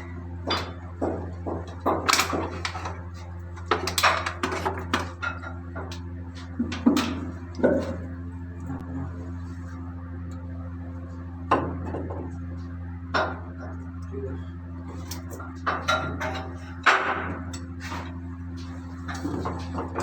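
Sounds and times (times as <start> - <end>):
metal clanks and knocks: 0.0 - 8.2, 15.1 - 20.0
low machinery hum: 0.0 - 20.0.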